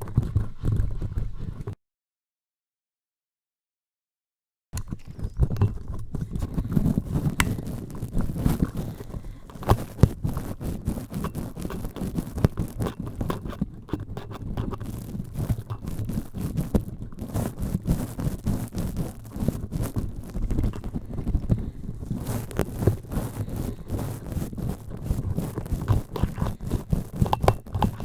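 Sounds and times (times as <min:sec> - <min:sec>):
scratching on a microphone: 0:00.0 - 0:01.8, 0:04.8 - 0:28.0.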